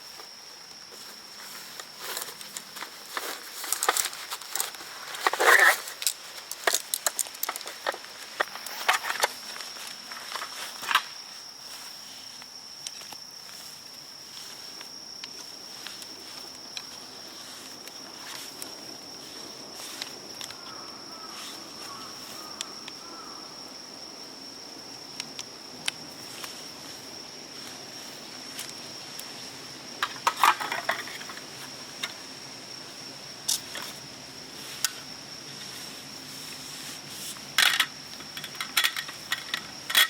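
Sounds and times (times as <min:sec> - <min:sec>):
light clicks and handling rustles: 0:00.2 - 0:20.8, 0:34.7 - 0:40.0.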